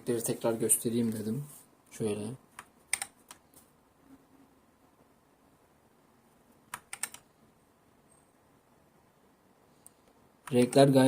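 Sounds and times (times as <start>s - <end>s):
mechanical keyboard keystrokes: 2.6s - 3.4s, 6.7s - 7.2s.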